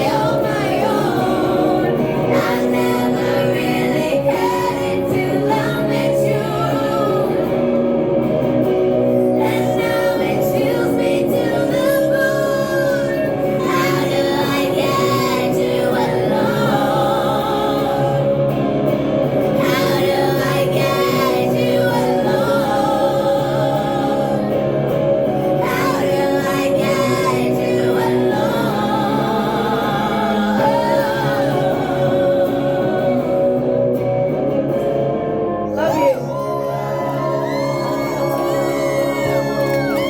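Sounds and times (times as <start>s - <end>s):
woman singing: 0.0s - 7.8s, 9.2s - 18.3s, 19.6s - 24.6s, 25.6s - 33.3s
sustained instrumental chords: 0.0s - 40.0s.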